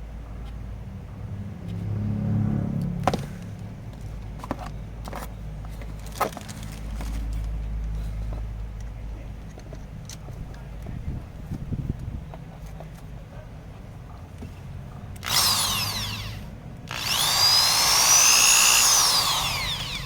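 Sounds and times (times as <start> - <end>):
electric drill motor drone: 15.2 - 20.0.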